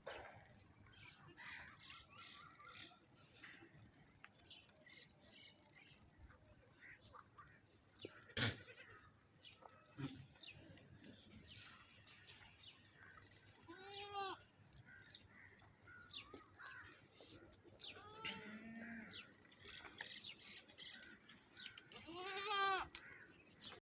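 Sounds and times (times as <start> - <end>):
goats bleating: 8.2 - 9.0, 13.6 - 14.5, 18.0 - 19.2, 21.9 - 23.0.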